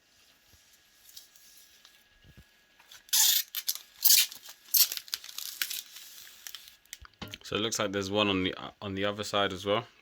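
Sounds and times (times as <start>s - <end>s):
plastic film peeling off glass: 2.9s - 7.0s.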